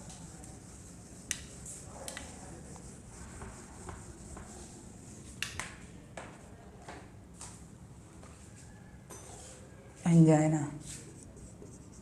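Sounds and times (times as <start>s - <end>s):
eraser wiping a board: 0.0s - 5.4s.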